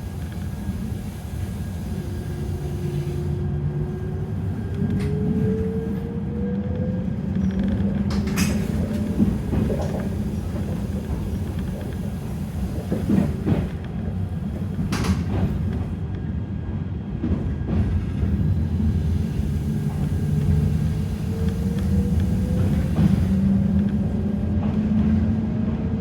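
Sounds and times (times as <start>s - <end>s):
train low rumble: 0.0s - 26.0s
wheels clacking on rail joints: 7.3s - 16.0s.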